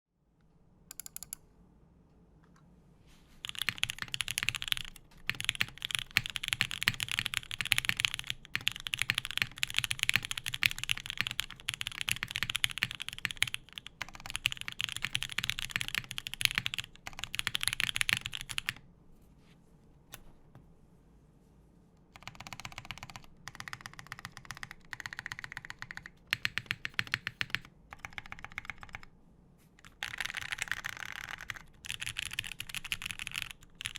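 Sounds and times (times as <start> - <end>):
fast typing on mechanical keyboard: 3.4 - 18.8, 22.1 - 29.1, 29.8 - 33.9.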